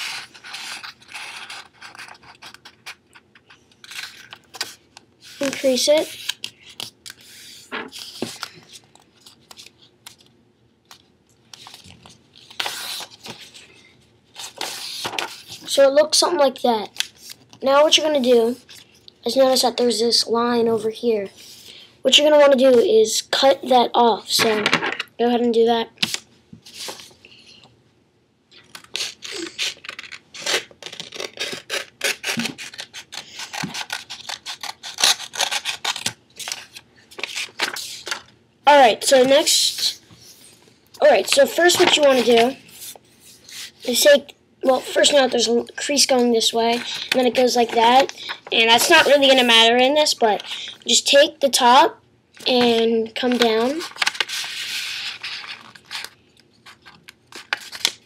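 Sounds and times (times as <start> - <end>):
paper being folded and creased: 0.0 - 10.3, 10.9 - 13.6, 14.3 - 15.7, 28.6 - 51.0, 52.4 - 58.0
paper rustling sweep: 26.1 - 27.1, 53.2 - 56.0
scissors cutting paper: 28.8 - 37.8.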